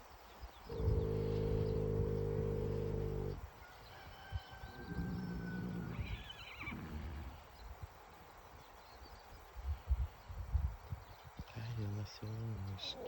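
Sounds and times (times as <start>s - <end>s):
horse snoring: 0.7s - 3.4s, 4.8s - 7.4s.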